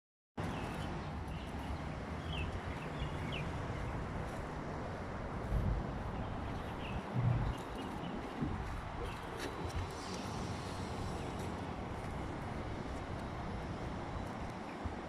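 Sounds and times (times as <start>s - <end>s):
low bump: 7.1s - 7.6s.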